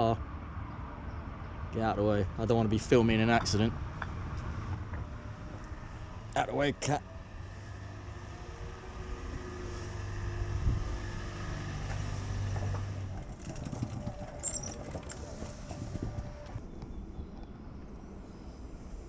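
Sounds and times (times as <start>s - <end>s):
car driving past: 4.2s - 13.2s.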